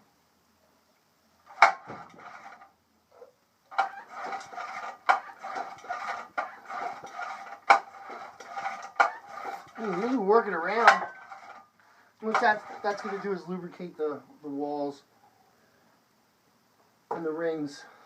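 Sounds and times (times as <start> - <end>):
outboard motor metallic clattering: 1.5 - 2.7, 3.7 - 11.7, 12.3 - 13.4.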